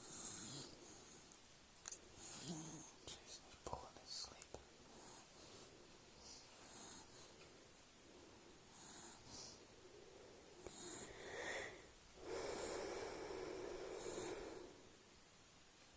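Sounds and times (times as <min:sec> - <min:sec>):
dog snoring: 0:00.0 - 0:01.2, 0:02.2 - 0:03.0, 0:06.6 - 0:07.3, 0:08.7 - 0:09.6, 0:10.6 - 0:14.7.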